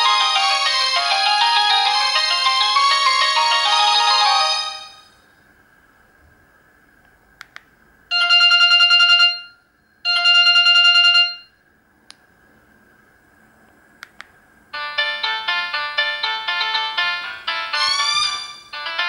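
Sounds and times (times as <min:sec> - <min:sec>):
buzzy warbling phone ringtone: 0:00.0 - 0:05.1, 0:14.8 - 0:19.0
melodic phone ringtone: 0:00.0 - 0:05.1, 0:08.1 - 0:11.5, 0:14.8 - 0:19.0.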